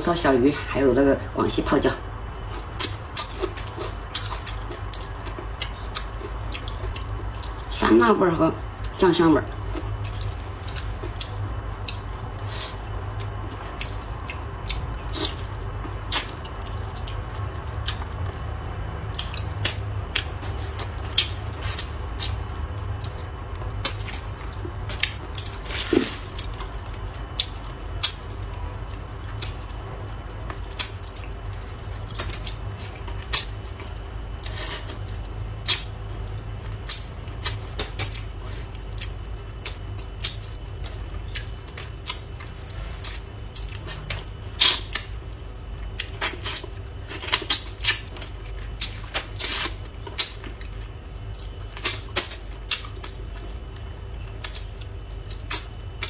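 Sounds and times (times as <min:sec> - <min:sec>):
low background rumble: 0:00.0 - 0:56.0
soft chewing: 0:02.3 - 0:07.7, 0:08.8 - 0:56.0.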